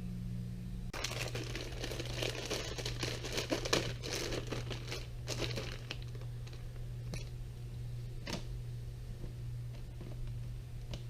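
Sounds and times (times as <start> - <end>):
low steady hum: 0.0 - 11.0
crinkling and crackling by hand: 0.9 - 7.5, 9.1 - 11.0.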